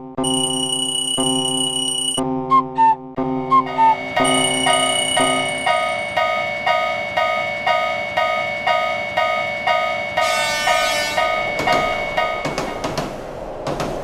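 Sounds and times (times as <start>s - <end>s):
steady high tone: 3.4s - 8.0s, 10.2s - 12.6s
railway crossing bell ringing: 3.7s - 12.9s.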